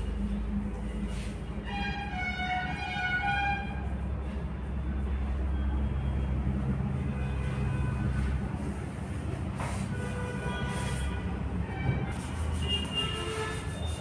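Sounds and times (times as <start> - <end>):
horn-like tone: 10.0 - 14.0.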